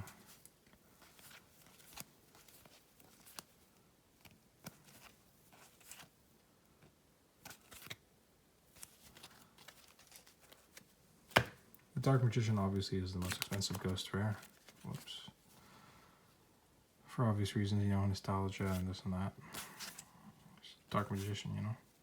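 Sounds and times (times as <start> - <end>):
trading cards clicking and rustling: 0.0 - 3.6, 4.2 - 6.1, 7.4 - 8.0, 8.8 - 15.2, 19.5 - 20.1.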